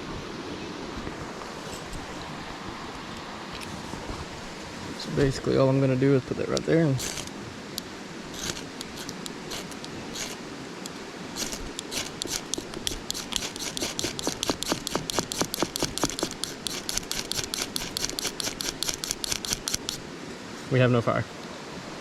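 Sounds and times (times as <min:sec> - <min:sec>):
fire striker scraping: 0:06.6 - 0:07.4, 0:08.3 - 0:20.0.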